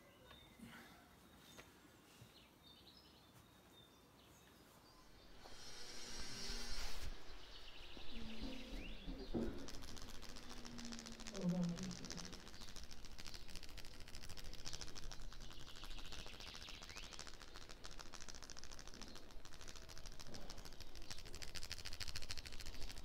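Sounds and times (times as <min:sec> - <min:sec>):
faint bird chirp: 0:00.0 - 0:23.0
massage clicks and rubbing: 0:05.1 - 0:23.0.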